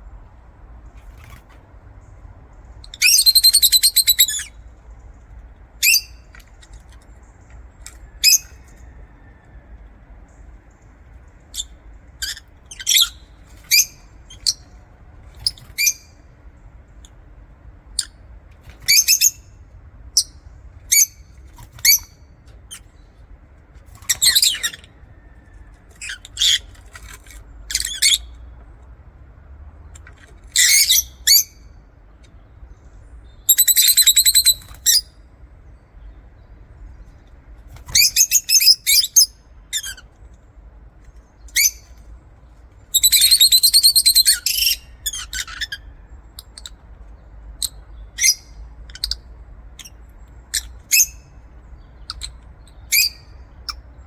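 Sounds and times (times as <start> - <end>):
lovebirds chirping: 2.0 - 8.9, 10.3 - 17.2, 30.0 - 35.1, 41.1 - 54.0.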